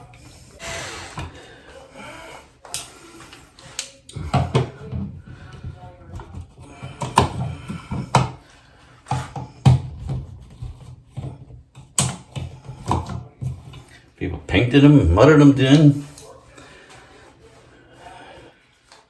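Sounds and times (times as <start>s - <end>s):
tools clicking and knocking: 9.0s - 13.9s.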